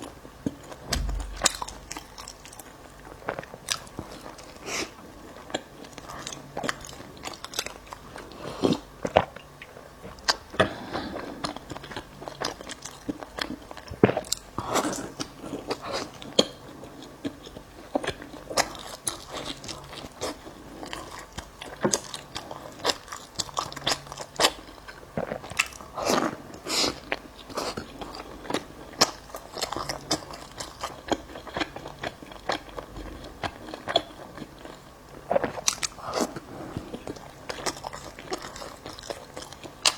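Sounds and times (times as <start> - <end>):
chewing and biting bread: 11.4 - 39.9.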